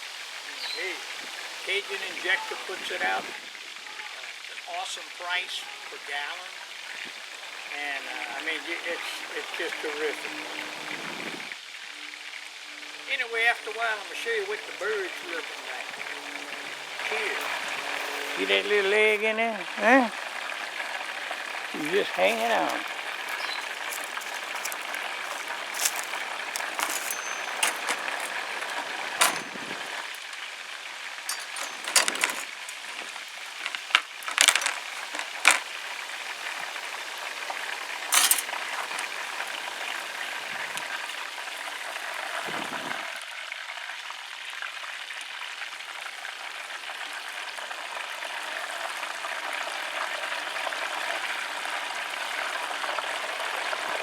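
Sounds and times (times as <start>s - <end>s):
oil sizzling and bubbling: 0.0s - 54.0s.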